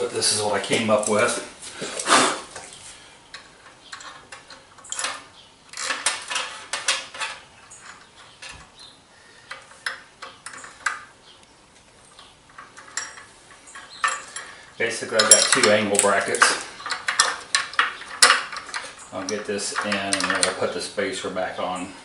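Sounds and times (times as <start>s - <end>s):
metal parts and tools clinking: 3.3s - 8.8s, 9.5s - 11.1s, 12.0s - 20.8s.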